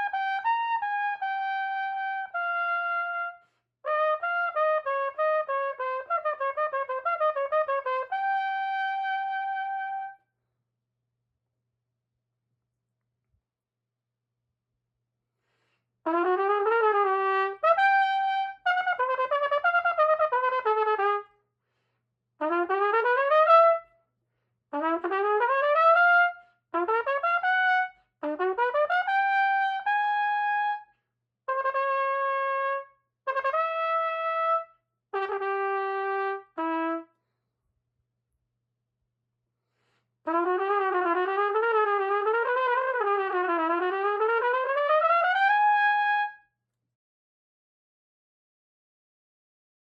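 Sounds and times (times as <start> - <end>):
solo brass instrument: 0.0 - 10.2, 16.0 - 21.4, 22.4 - 24.0, 24.7 - 30.9, 31.5 - 37.2, 40.3 - 46.4.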